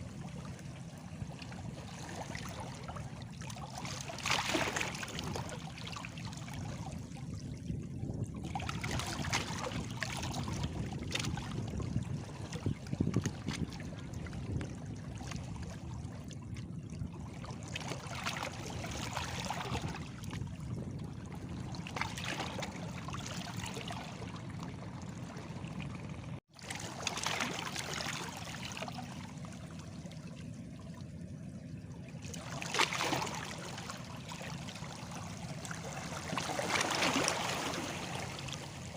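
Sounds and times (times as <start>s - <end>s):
waves lapping against stones: 0.8s - 6.6s, 8.4s - 15.8s, 26.3s - 29.4s, 32.2s - 38.9s.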